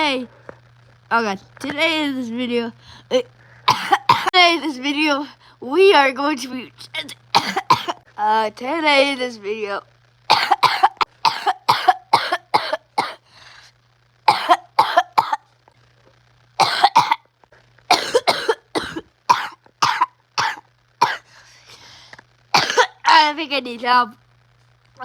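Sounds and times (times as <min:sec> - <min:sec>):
person coughing: 0:03.1 - 0:04.3, 0:07.4 - 0:08.0, 0:10.3 - 0:13.2, 0:16.6 - 0:17.2, 0:17.9 - 0:21.3, 0:22.6 - 0:23.0.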